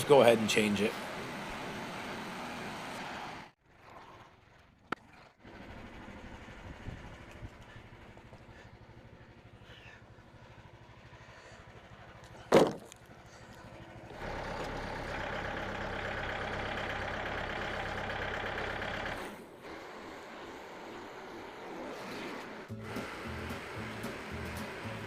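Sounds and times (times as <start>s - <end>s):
engine running loudly: 13.2s - 20.7s, 22.7s - 25.0s.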